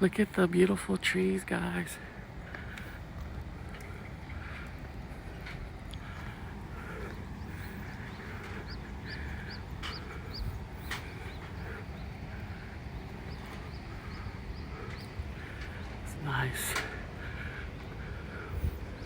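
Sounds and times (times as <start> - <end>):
steady low rumble: 0.0 - 19.0
small bird chirping: 5.9 - 16.6.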